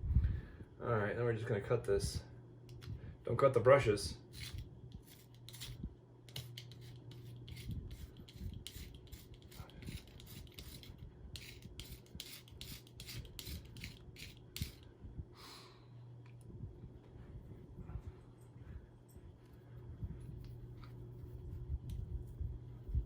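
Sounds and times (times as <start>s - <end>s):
blade cutting through hair: 4.4s - 14.8s.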